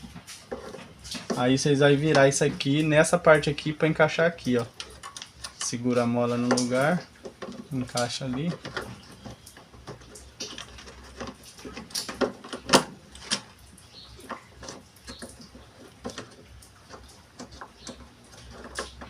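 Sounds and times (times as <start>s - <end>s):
plastic parts clicking and knocking: 0.1s - 19.0s.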